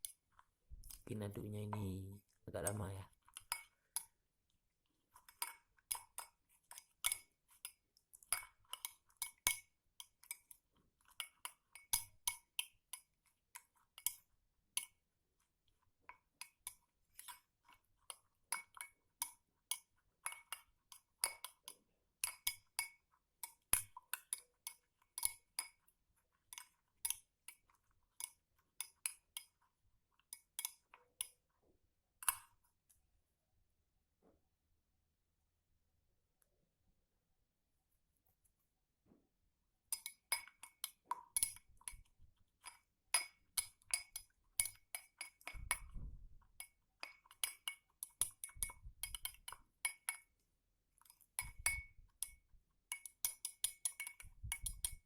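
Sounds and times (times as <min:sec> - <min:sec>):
spoon clinking in a cup: 0:05.1 - 0:15.0, 0:16.1 - 0:29.6, 0:30.2 - 0:31.4, 0:39.9 - 0:50.4, 0:51.0 - 0:55.0.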